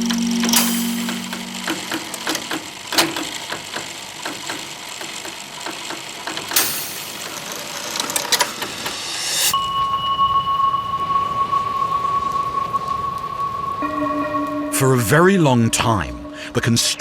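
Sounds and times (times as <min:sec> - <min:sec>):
clockwork mechanism ticking: 0:00.0 - 0:09.6.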